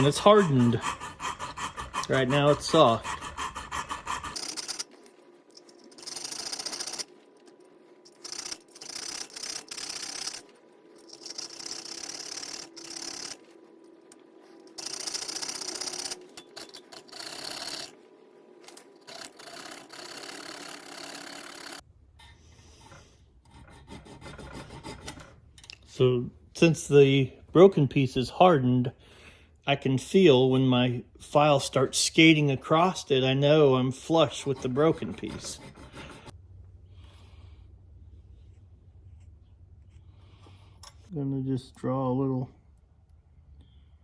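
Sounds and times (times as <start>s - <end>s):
hand file rasping on steel: 0.0s - 4.6s, 22.8s - 25.3s, 34.1s - 36.3s.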